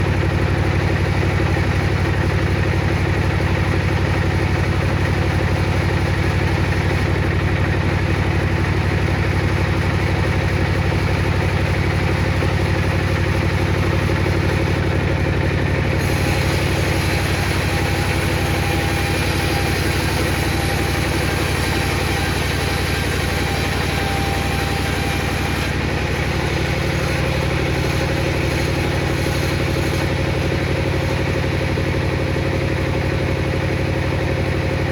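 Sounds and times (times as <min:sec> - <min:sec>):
table saw running: 0:00.0 - 0:34.9
saw blade cutting wood: 0:07.6 - 0:33.2.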